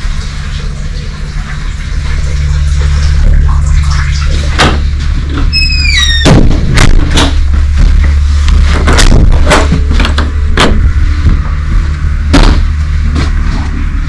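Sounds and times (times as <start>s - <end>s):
vehicle rumbling: 0.0s - 14.0s
short falling squeal: 5.5s - 6.3s.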